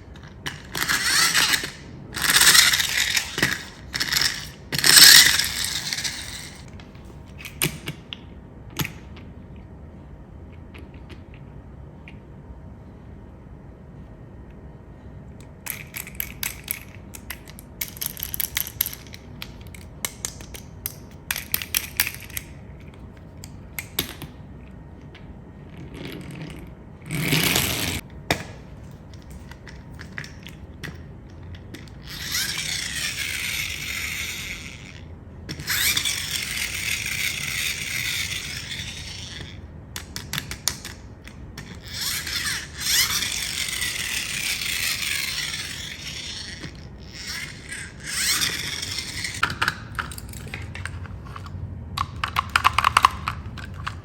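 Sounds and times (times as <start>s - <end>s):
harsh whirring scrape: 0.0s - 6.7s, 25.7s - 28.0s, 31.8s - 39.6s, 41.6s - 49.4s
mechanical clicking and ratcheting: 0.5s - 6.7s, 32.0s - 35.0s, 35.6s - 41.0s, 41.6s - 50.9s, 52.0s - 54.0s.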